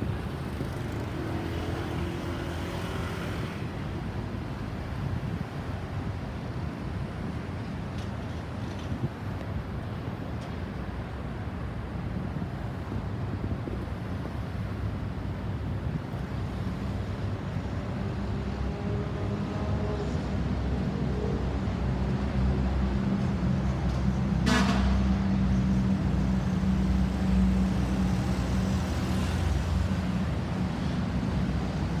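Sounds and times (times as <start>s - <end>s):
road traffic: 0.0s - 32.0s
short horn toot: 24.4s - 25.0s.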